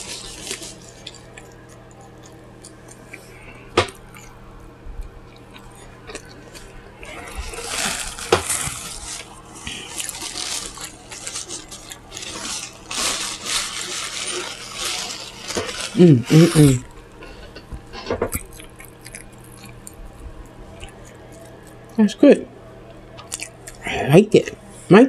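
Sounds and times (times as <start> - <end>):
wet chewing and lip-smacking: 0.1 - 3.3, 3.9 - 4.4, 5.0 - 7.5, 17.1 - 22.0, 23.2 - 23.8.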